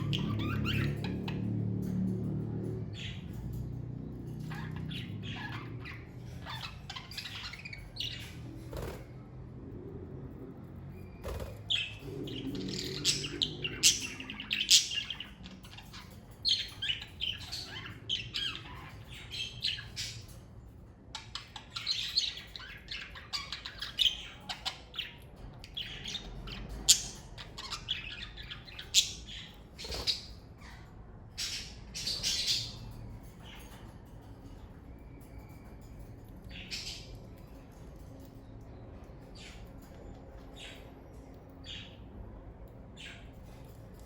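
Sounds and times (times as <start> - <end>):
budgerigars chirping and squawking: 0.0 - 9.4, 10.9 - 44.0.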